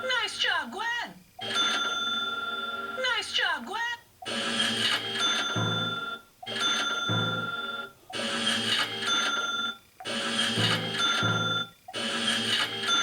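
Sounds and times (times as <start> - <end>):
bell-like ringing tones: 5.2 - 7.9, 10.6 - 11.7.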